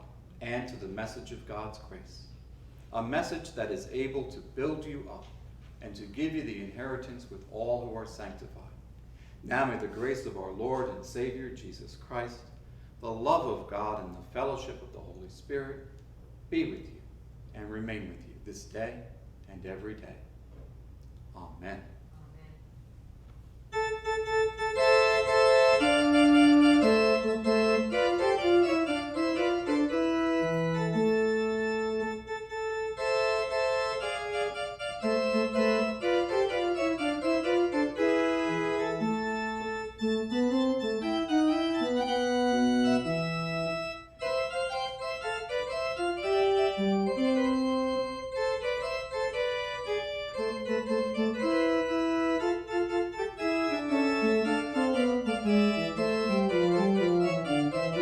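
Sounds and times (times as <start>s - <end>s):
organ playing chords: 23.7s - 58.0s.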